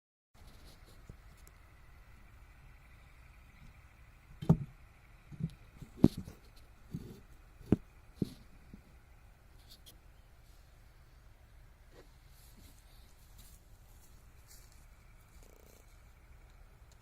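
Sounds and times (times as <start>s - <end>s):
faint low hum: 0.4s - 17.0s
irregular knocks and thumps: 3.6s - 9.0s.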